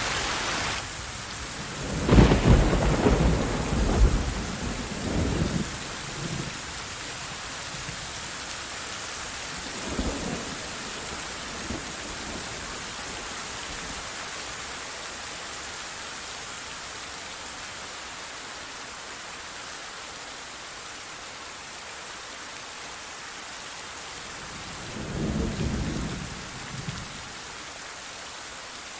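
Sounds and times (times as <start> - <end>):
heavy rain hissing: 0.0 - 28.9
thunder rumbling: 1.1 - 6.6, 24.3 - 27.4.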